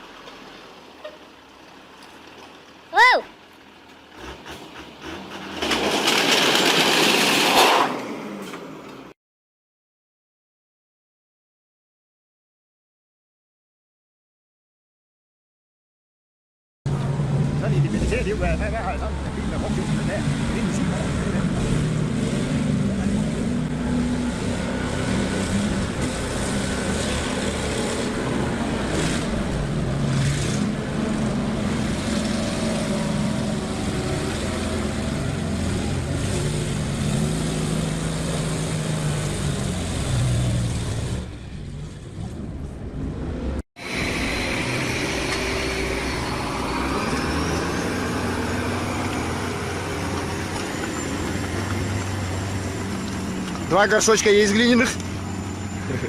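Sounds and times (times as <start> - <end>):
heavy machinery engine humming: 16.9 - 56.0.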